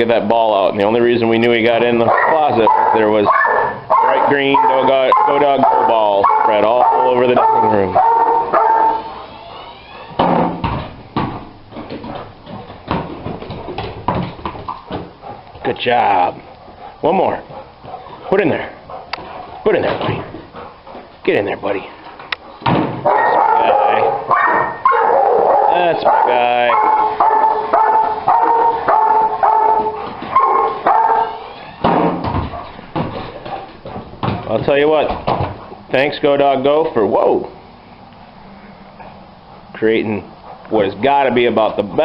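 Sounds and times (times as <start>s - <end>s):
dog barking high-pitched: 2.0s - 10.2s, 23.0s - 31.5s
ball knocks and clatters: 10.2s - 15.2s, 31.9s - 35.7s.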